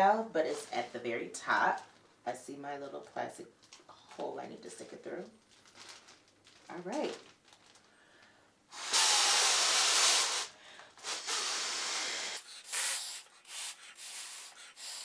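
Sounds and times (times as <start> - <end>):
breath blowing through a straw: 8.7 - 15.0.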